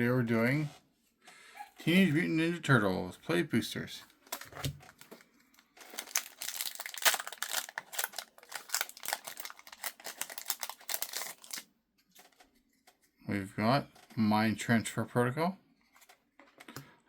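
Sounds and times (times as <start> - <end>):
foil wrapper crinkling and tearing: 4.2 - 12.4.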